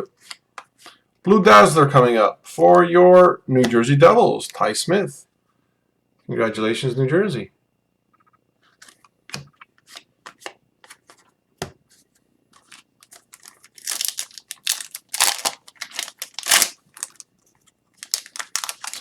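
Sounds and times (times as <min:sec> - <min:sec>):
foil wrapper crinkling and tearing: 0:12.7 - 0:17.3, 0:18.0 - 0:19.0.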